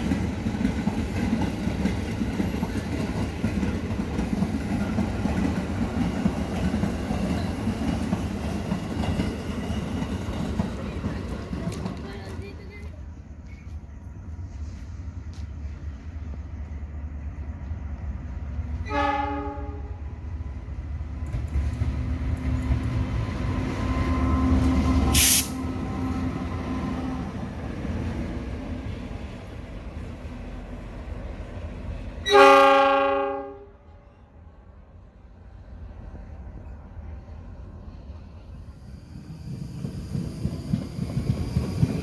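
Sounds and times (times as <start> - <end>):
train rumbling on rails: 0.0 - 42.0
train horn blast: 18.8 - 20.0, 32.2 - 34.0
brief hiss: 25.1 - 25.6.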